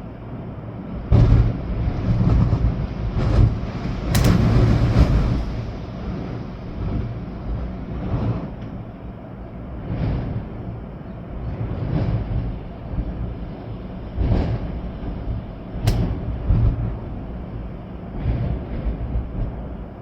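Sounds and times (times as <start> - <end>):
rain: 0.0 - 20.0
wind rumbling on microphone: 0.0 - 20.0
storm wind gusting: 0.2 - 20.0
sharp click: 4.1 - 4.6, 15.8 - 16.3.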